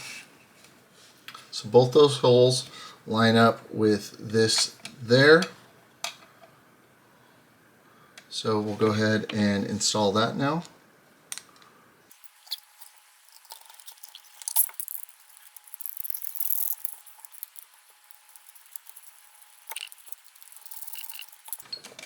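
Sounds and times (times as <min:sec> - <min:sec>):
parts being handled: 0:12.1 - 0:22.0
screwdriver scraping turns: 0:12.2 - 0:21.7.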